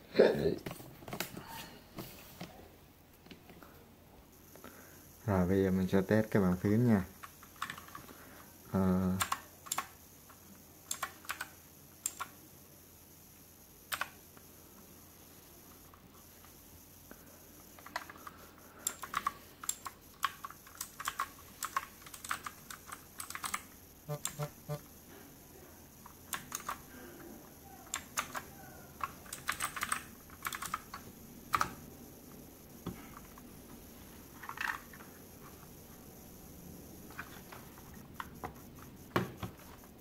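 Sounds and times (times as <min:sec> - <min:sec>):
mechanical keyboard typing: 0:07.1 - 0:08.0, 0:09.0 - 0:10.0, 0:10.8 - 0:12.4, 0:13.9 - 0:14.2, 0:17.8 - 0:24.8, 0:26.0 - 0:26.9, 0:27.6 - 0:31.8.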